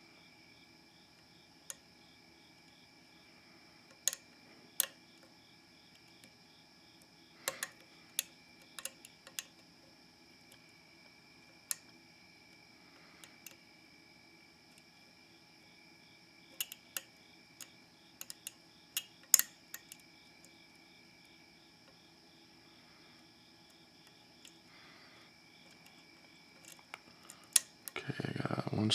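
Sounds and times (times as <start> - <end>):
metallic clicks of lock picking: 3.9 - 4.2, 7.5 - 9.5, 16.6 - 20.0, 26.6 - 28.0.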